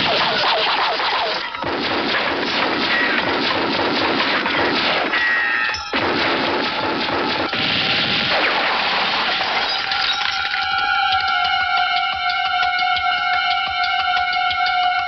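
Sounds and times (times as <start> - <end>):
crashes and impacts: 0.0 - 10.7
trailer music: 6.0 - 15.0.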